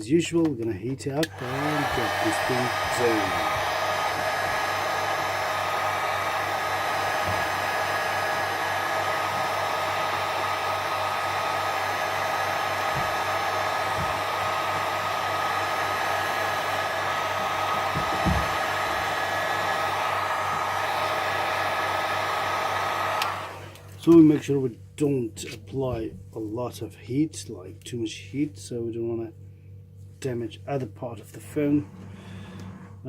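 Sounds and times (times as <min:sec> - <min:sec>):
heat gun blowing with whine: 0:01.2 - 0:24.2.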